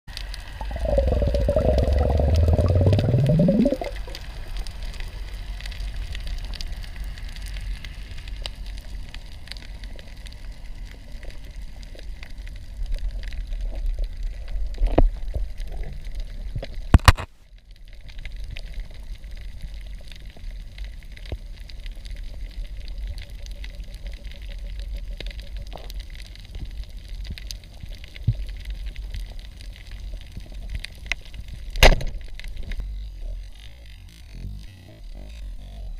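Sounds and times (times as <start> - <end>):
small clicks underwater: 0.1 - 35.9
low underwater rumble: 0.4 - 4.5
loud rising hum: 0.6 - 4.1.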